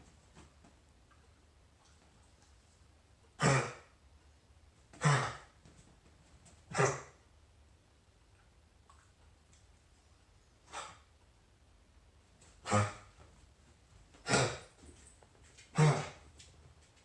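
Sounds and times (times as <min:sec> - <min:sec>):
harsh coughs: 0:03.4 - 0:03.9, 0:05.0 - 0:05.5, 0:14.2 - 0:14.7.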